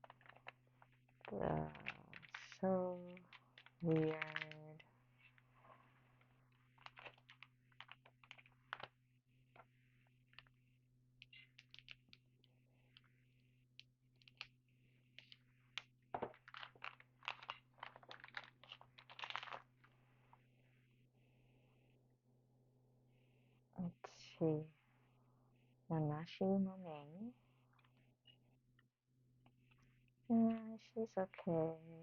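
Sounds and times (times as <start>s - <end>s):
trading cards clicking and rustling: 0.0s - 5.4s, 6.7s - 8.9s, 11.2s - 12.2s, 15.2s - 19.7s.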